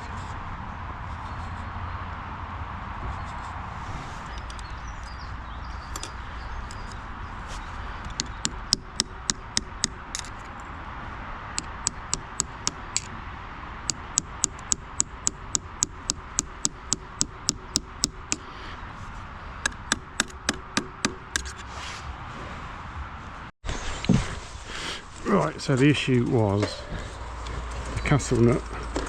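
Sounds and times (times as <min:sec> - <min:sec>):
knife tapping metal nut: 0:08.1 - 0:10.5.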